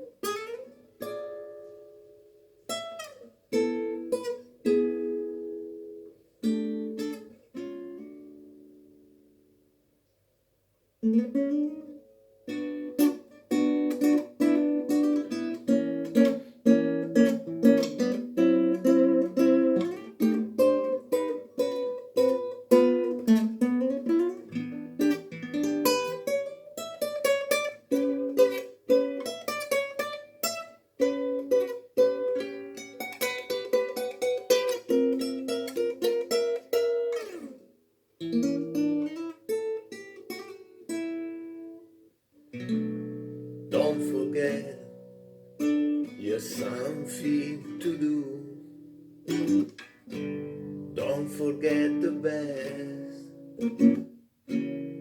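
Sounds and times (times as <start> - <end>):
guitar picking single notes: 27.2 - 55.0.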